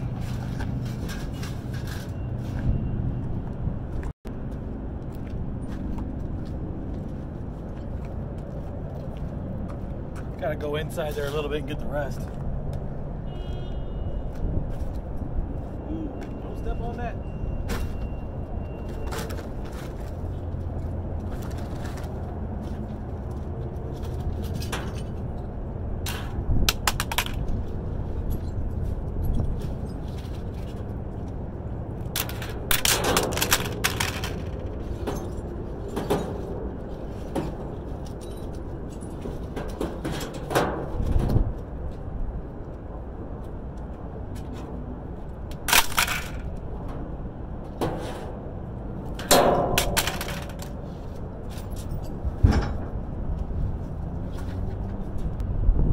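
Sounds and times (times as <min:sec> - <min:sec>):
scrap metal clanking: 0:00.0 - 0:02.6, 0:47.7 - 0:48.5, 0:49.1 - 0:53.0
steady low rumble: 0:55.0 - 0:55.9.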